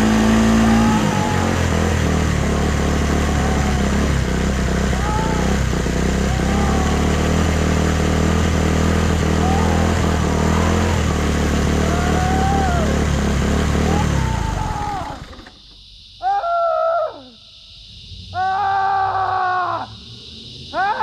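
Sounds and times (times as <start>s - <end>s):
small motorcycle engine running: 0.0s - 15.6s.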